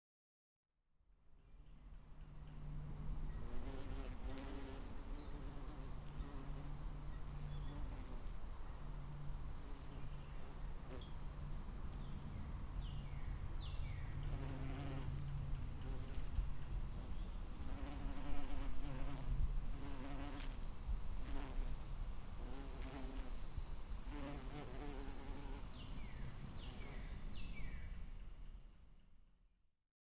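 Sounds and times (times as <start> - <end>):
honeybees buzzing: 17.6 - 20.6.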